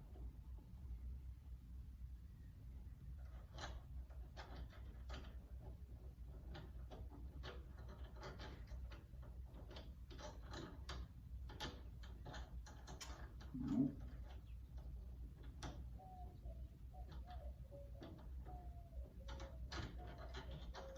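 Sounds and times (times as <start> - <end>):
metal door hardware clicking: 3.2 - 16.0, 17.0 - 20.9.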